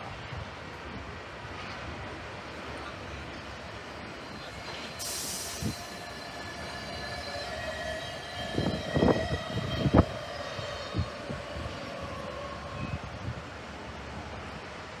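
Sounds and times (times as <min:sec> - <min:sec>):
train wheels squealing: 0:03.4 - 0:13.5.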